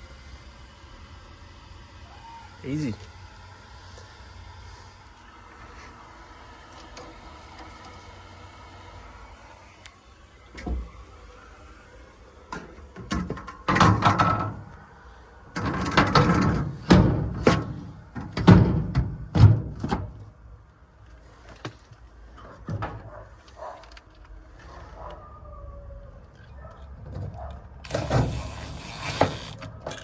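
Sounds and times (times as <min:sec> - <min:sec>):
loud knocks and clattering bangs: 0:15.8 - 0:20.1.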